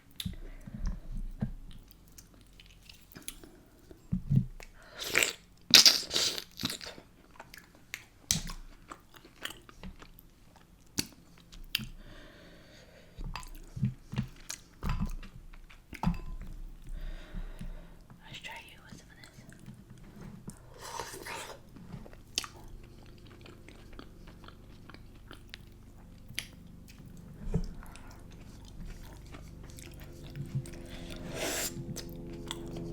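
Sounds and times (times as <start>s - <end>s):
person chewing food: 0.0s - 12.1s, 13.2s - 18.2s, 19.1s - 32.9s.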